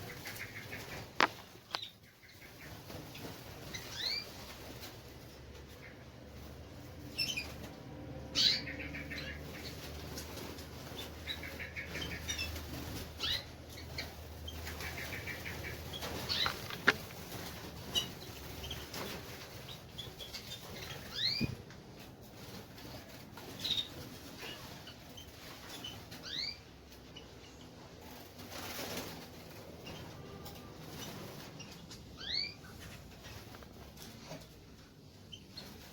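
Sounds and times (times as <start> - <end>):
birds chirping: 0.0 - 35.9
wings fluttering: 9.4 - 27.0, 28.1 - 34.6.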